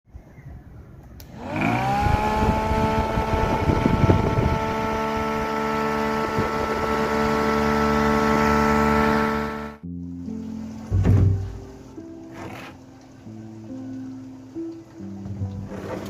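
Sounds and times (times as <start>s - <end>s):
small electric motor whine: 1.3s - 9.8s.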